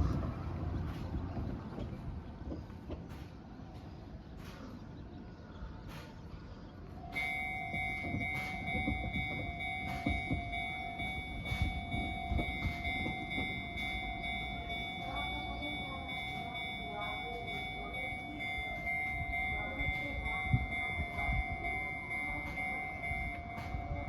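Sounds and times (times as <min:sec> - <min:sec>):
constant low rumble: 0:00.0 - 0:24.0
level crossing warning alarm: 0:06.8 - 0:24.0.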